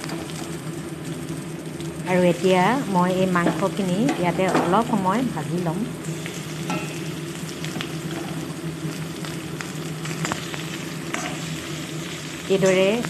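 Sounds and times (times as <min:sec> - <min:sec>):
chicken sizzling in hot oil: 0:00.0 - 0:13.0
small crackles: 0:07.4 - 0:13.0.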